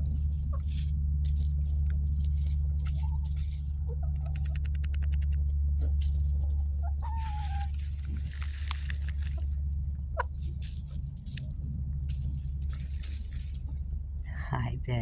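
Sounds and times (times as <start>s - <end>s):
steady low hum: 0.0s - 15.0s
rapid tapping: 1.5s - 6.8s
hens clucking: 1.8s - 11.5s.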